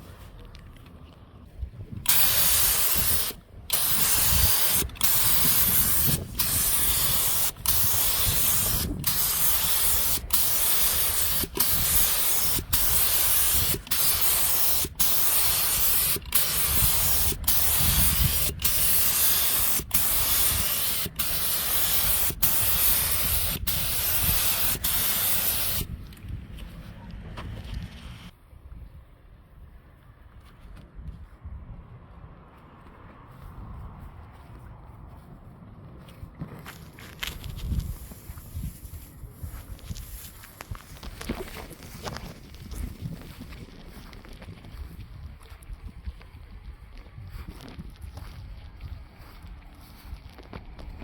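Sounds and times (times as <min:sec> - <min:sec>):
paint spray gun hissing: 0:02.1 - 0:25.9.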